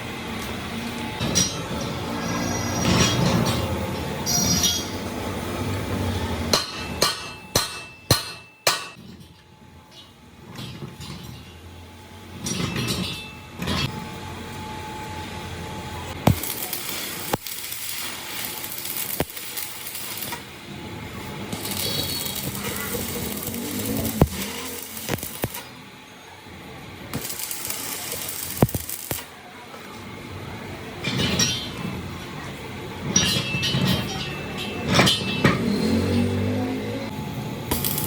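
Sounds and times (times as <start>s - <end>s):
hammer striking metal: 2.7s - 5.1s, 6.5s - 9.0s, 33.1s - 36.4s.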